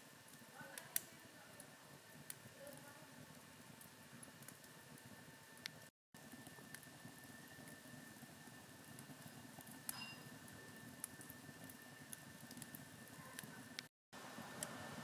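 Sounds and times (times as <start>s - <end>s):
campfire crackling: 0.0s - 15.0s.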